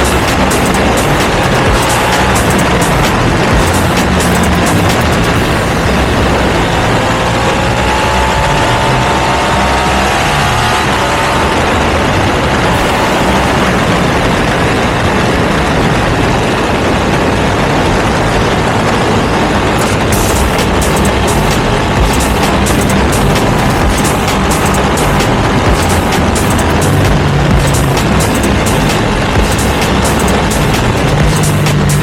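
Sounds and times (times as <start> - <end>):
dense rushing noise: 0.0 - 32.0
motorcycle engine accelerating: 0.0 - 32.0.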